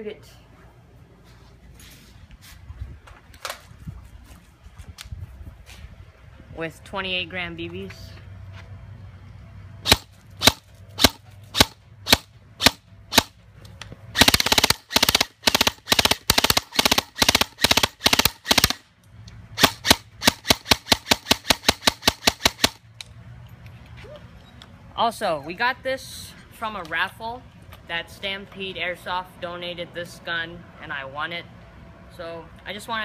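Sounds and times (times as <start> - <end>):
airsoft gun firing: 9.8 - 13.4, 14.1 - 18.8, 19.6 - 22.8.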